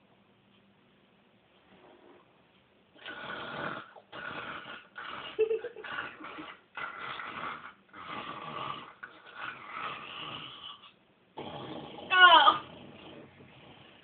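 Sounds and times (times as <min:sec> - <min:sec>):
loud snort: 0:03.0 - 0:14.0
person snoring: 0:11.4 - 0:13.8.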